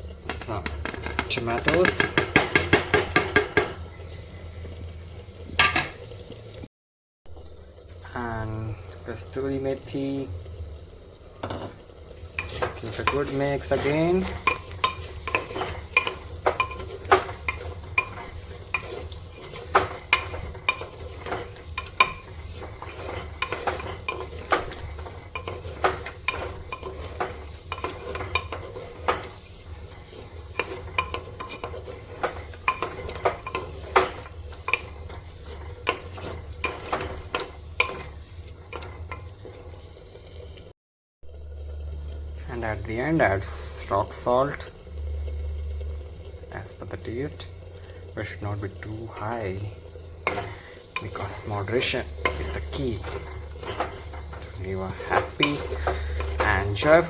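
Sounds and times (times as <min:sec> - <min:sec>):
soft sizzle: 0:00.0 - 0:06.7, 0:07.3 - 0:57.0
low steady hum: 0:07.3 - 0:40.3, 0:41.3 - 0:57.0
spoon scraping clay pot: 0:12.4 - 0:40.0, 0:50.2 - 0:57.0.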